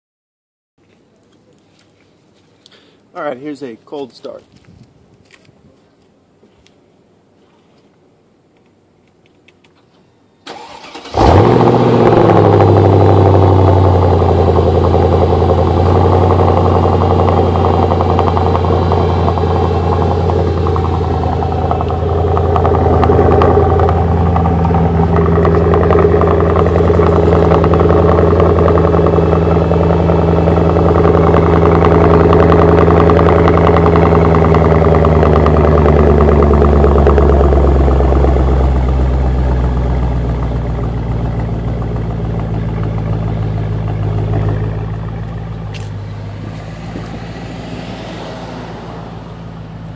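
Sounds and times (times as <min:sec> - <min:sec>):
car engine cold starting and idling: 0:10.4 - 0:49.9.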